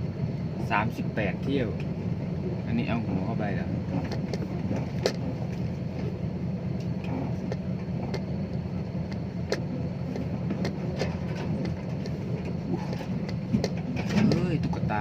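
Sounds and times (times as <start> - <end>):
truck diesel engine running: 0.0 - 15.0
sharp clicks and knocks: 3.1 - 6.2, 6.8 - 14.9.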